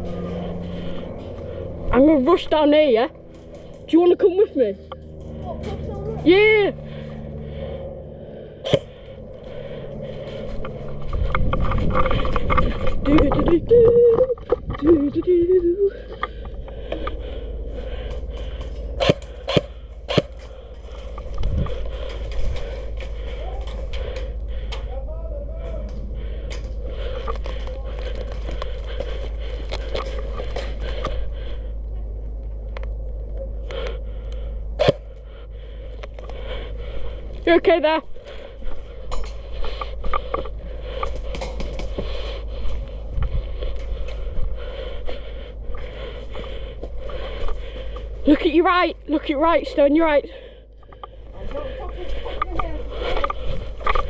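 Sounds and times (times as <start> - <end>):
steady low rumble: 0.0 - 54.0
clicks and crunches: 25.9 - 31.2.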